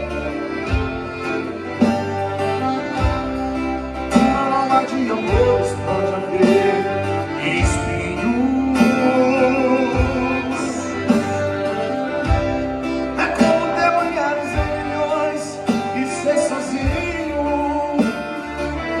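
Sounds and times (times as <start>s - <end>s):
acoustic guitar song with beat: 0.0s - 19.0s
man singing: 4.0s - 12.0s, 13.0s - 19.0s.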